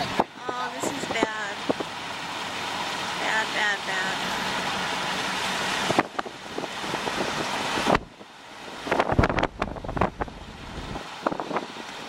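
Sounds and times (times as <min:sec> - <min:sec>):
wind noise on microphone: 0:05.7 - 0:12.0.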